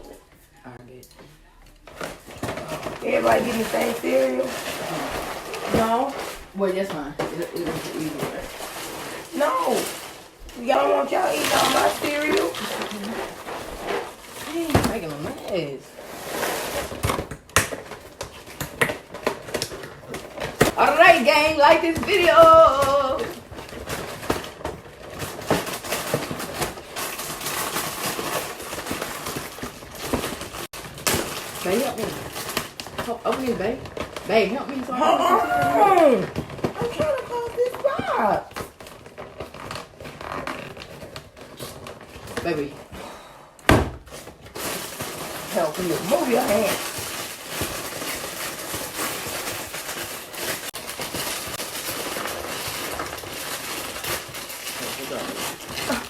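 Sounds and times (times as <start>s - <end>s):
cereal box and bag crinkling: 1.7s - 43.3s, 44.0s - 56.0s
packaging rustling: 1.7s - 56.0s
dry cereal rattling and pouring: 44.6s - 56.0s.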